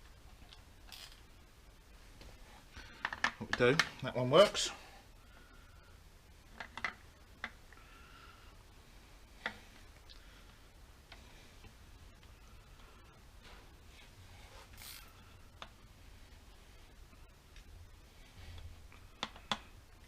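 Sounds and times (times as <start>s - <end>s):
faint clicks and taps: 18.5s - 19.8s.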